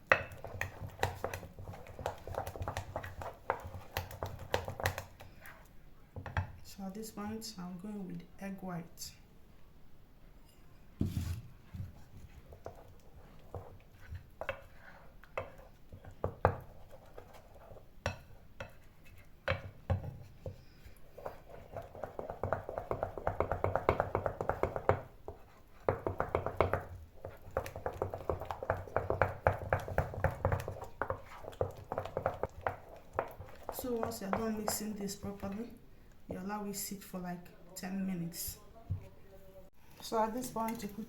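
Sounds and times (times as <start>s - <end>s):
utensil mixing batter in bowl: 0.0s - 6.4s, 11.9s - 36.4s.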